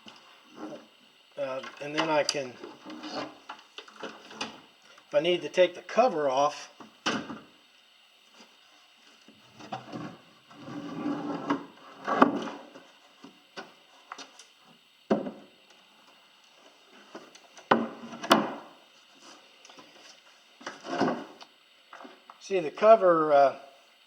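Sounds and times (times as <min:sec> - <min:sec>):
boat cover scraping: 0:02.6 - 0:03.4, 0:09.5 - 0:12.7.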